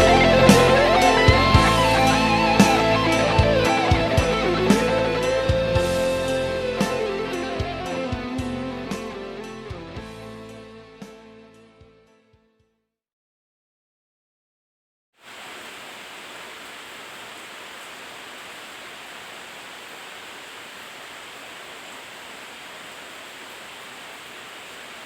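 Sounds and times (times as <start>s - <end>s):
steady static hiss: 15.2s - 25.0s.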